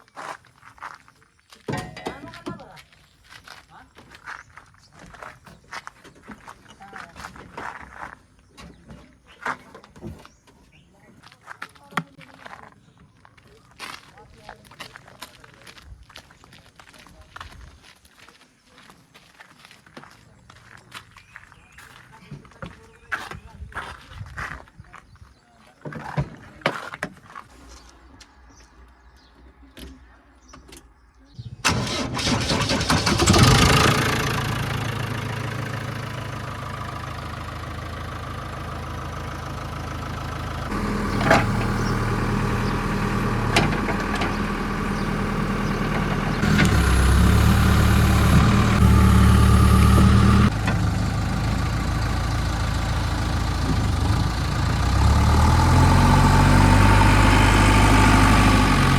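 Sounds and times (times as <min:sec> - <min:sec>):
diesel engine running: 0:31.4 - 0:58.9.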